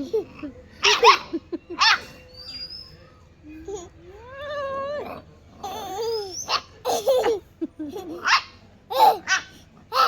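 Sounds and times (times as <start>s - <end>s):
dog whining and yelping: 0.8s - 3.0s, 4.2s - 6.7s.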